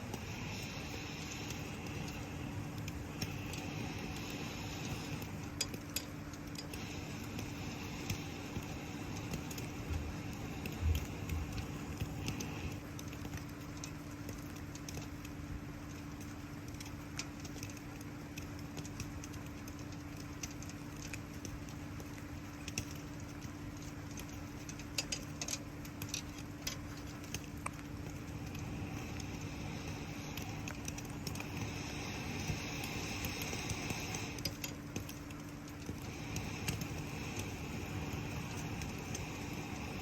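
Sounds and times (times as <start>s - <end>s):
high hiss: 0.0s - 5.8s, 6.6s - 12.8s, 28.2s - 34.5s, 36.0s - 40.0s
campfire crackling and popping: 0.0s - 40.0s
low hum: 0.0s - 40.0s
rain patter: 0.0s - 40.0s.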